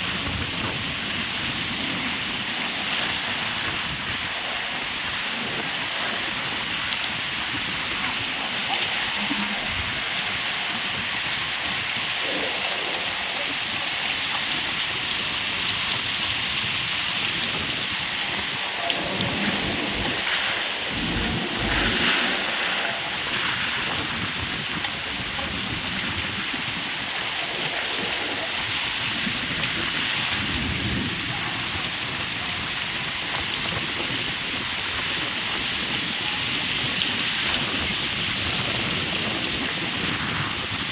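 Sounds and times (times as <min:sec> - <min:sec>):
steady rain falling: 0:00.0 - 0:40.9
low rumbles: 0:17.1 - 0:29.6.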